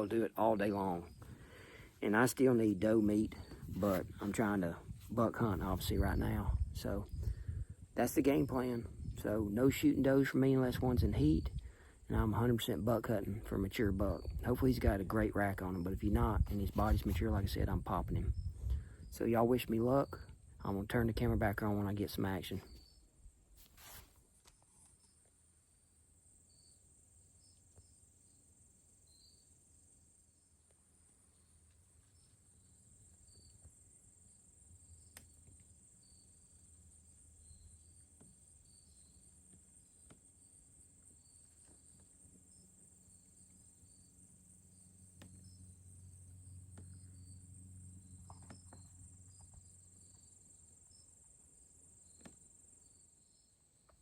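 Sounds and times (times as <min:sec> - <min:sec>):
insects trilling: 0:24.6 - 0:54.0.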